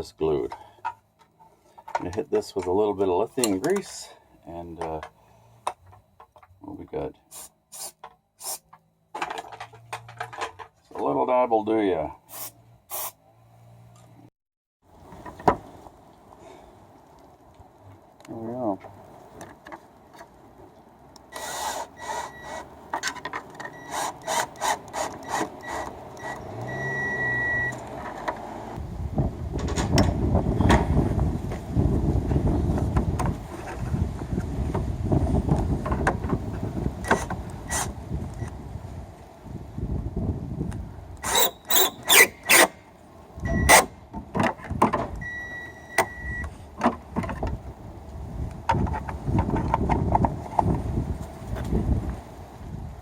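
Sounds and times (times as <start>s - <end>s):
clamp parts rubbing and scraping: 7.3s - 10.9s, 41.2s - 42.8s
short high beep: 26.2s - 27.8s, 43.5s - 43.8s, 45.2s - 46.5s.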